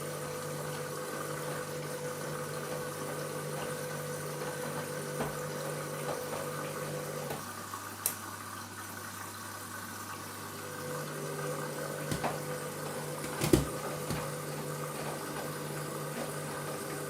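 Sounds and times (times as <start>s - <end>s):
washing machine motor hum: 0.0s - 8.6s, 9.4s - 17.0s
water moving in drum: 11.4s - 16.4s.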